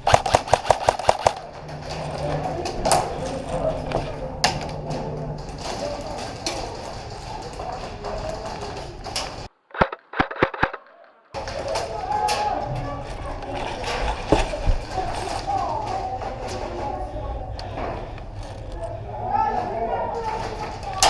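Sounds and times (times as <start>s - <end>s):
airsoft guns firing pops: 0.0s - 1.4s
field background noise: 0.0s - 21.0s.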